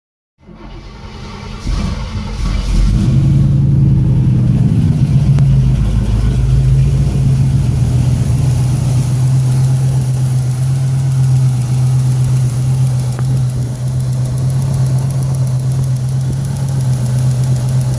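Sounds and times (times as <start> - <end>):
vee eight engine idling: 3.1 - 17.9.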